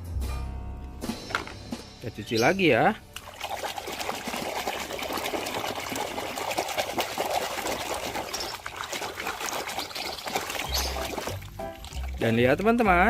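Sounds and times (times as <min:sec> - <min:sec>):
water trickling and splashing: 0:03.1 - 0:13.0.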